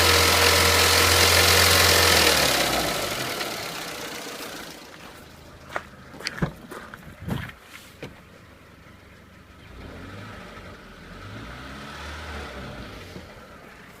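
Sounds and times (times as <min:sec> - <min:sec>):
car engine running: 0:00.0 - 0:09.8.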